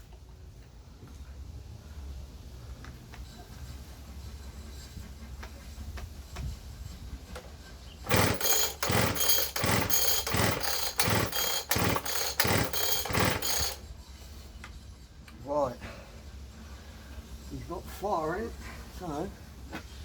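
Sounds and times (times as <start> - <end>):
recoil pull-starter cranking engine: 8.1 - 13.8.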